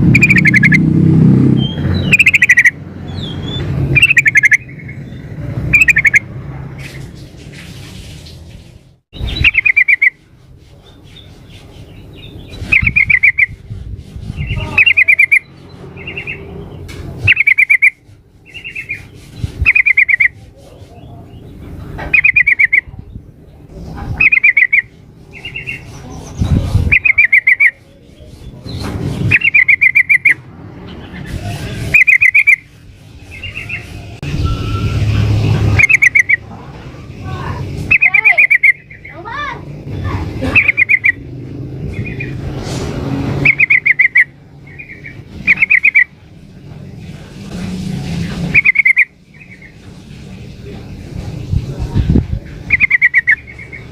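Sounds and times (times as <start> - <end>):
bird chattering calls: 0.0 - 7.0, 9.2 - 10.3, 10.9 - 23.0, 24.1 - 34.2, 35.6 - 36.5, 37.1 - 42.5, 43.3 - 46.2, 48.2 - 49.8, 52.6 - 53.9.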